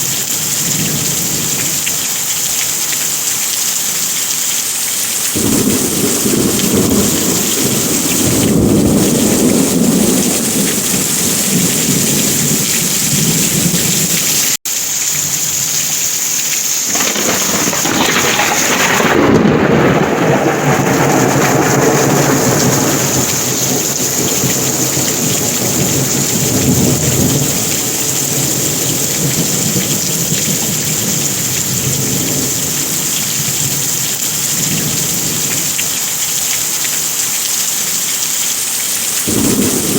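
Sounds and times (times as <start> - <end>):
heavy rain falling: 0.0 - 39.9
rolling thunder: 5.4 - 14.4, 16.9 - 35.8, 39.3 - 39.9.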